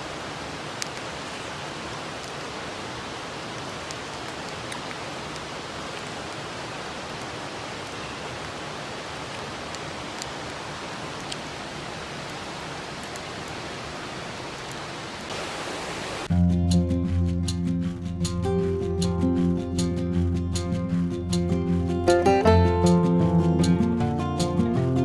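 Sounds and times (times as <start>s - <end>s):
stream rushing over rocks: 0.0s - 16.3s.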